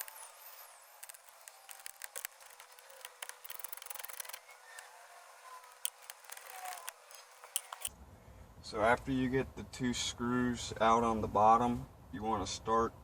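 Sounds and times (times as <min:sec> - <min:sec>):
hand tool clicks and scraping: 0:00.0 - 0:04.9, 0:05.6 - 0:07.9.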